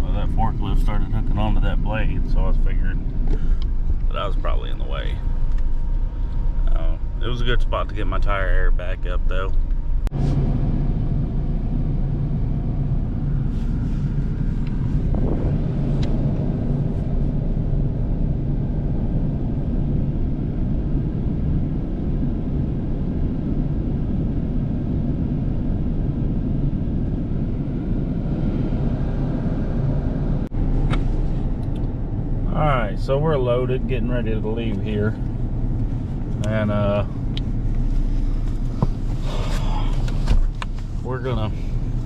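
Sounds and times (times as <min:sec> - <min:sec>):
diesel engine idling: 0:00.0 - 0:20.0, 0:28.8 - 0:42.0.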